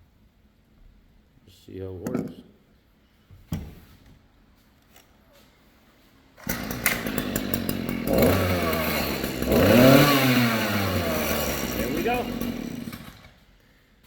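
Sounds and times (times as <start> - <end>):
string trimmer engine revving: 6.4 - 13.4.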